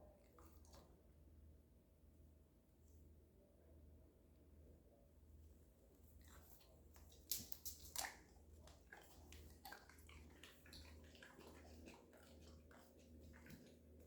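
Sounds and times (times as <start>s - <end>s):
dog chewing with wet clicks: 6.2s - 14.0s.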